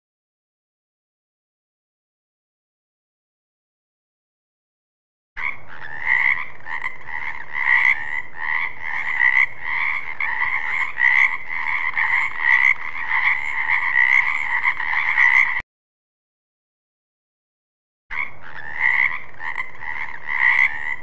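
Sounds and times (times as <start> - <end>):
frogs croaking: 5.4 - 15.6, 18.1 - 21.0.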